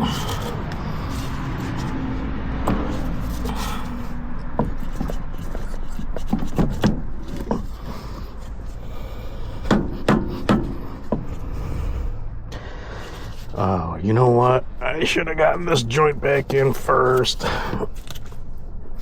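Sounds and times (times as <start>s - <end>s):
tools scraping and rubbing: 0.0s - 11.5s
steady low hum: 0.0s - 19.0s
sharp metal knocks: 9.6s - 11.3s.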